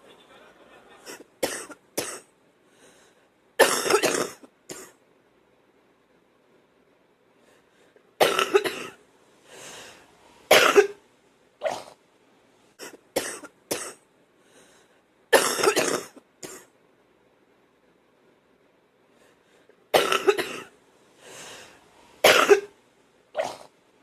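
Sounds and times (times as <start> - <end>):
person coughing wet coughs: 1.1 - 2.3, 3.6 - 5.0, 8.2 - 9.0, 10.5 - 11.0, 12.8 - 14.0, 15.3 - 16.7, 20.0 - 20.7, 22.2 - 22.7
drawn breath: 2.6 - 3.3, 9.4 - 10.4, 14.4 - 15.1, 21.1 - 22.2.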